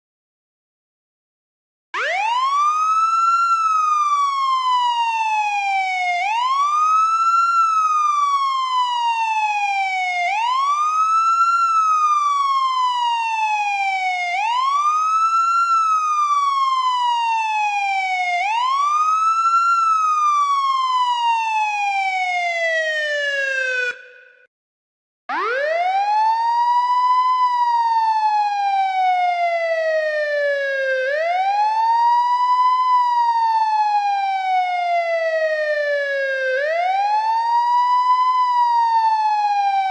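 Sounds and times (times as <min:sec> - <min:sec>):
police siren wailing: 0:02.0 - 0:24.4, 0:25.3 - 0:39.9.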